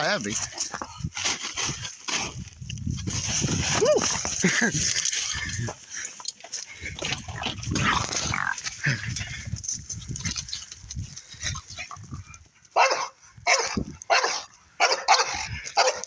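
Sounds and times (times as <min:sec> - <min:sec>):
dog barking loudly: 0:12.8 - 0:16.0.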